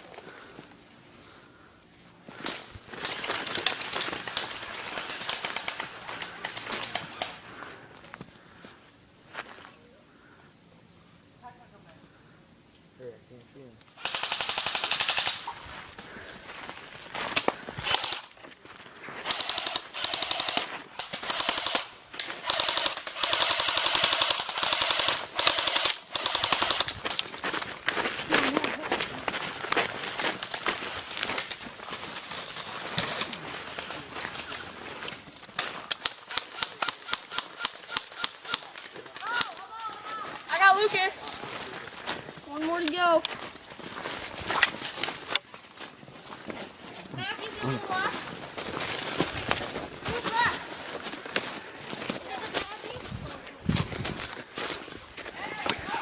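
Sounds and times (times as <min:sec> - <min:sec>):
airsoft guns firing rapid bursts: 0:03.0 - 0:07.3, 0:14.0 - 0:15.5, 0:17.8 - 0:18.3, 0:19.2 - 0:27.2, 0:36.0 - 0:38.8
dry leaves crunching underfoot: 0:27.0 - 0:36.0, 0:38.6 - 0:56.0.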